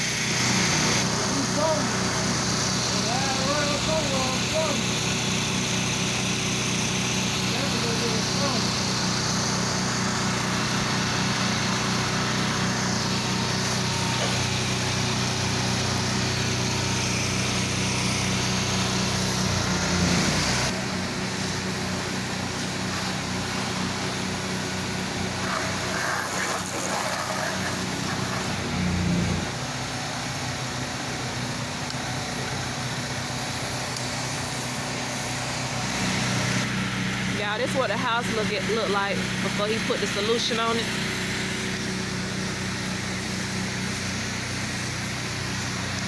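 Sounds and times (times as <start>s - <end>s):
small gasoline engine running: 0.0s - 46.0s.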